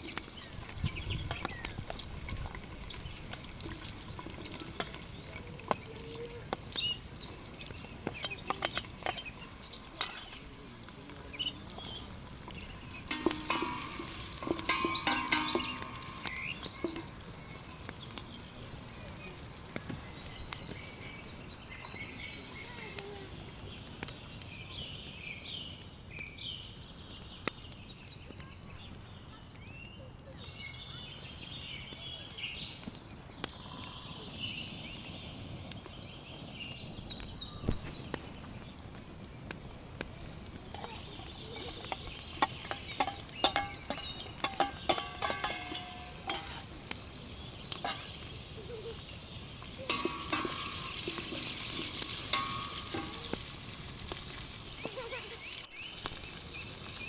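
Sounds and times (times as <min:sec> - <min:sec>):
food sizzling in a pan: 0:00.0 - 0:24.0, 0:33.4 - 0:36.8, 0:38.6 - 0:57.0
utensil clicking and scraping: 0:08.0 - 0:09.4, 0:40.8 - 0:46.7.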